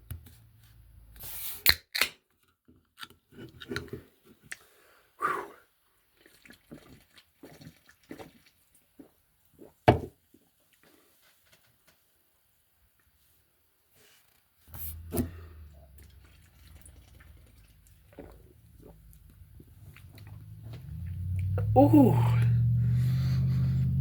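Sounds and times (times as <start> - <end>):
can opening hiss: 1.2 - 2.1
can clicks: 1.6 - 2.2
person gulping and swallowing: 5.2 - 9.8, 15.7 - 22.7.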